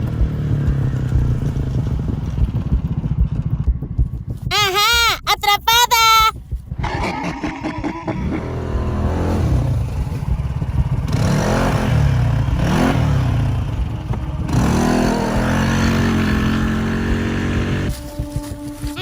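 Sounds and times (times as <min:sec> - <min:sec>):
vehicle engine revving: 0:07.4 - 0:17.9.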